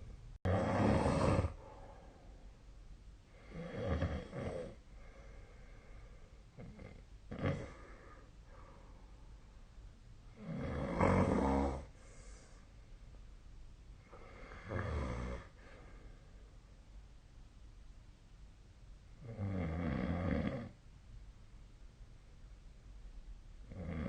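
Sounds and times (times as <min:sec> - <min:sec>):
person snoring: 0:00.5 - 0:01.9, 0:03.4 - 0:04.8, 0:06.6 - 0:08.3, 0:10.3 - 0:12.0, 0:14.1 - 0:15.6.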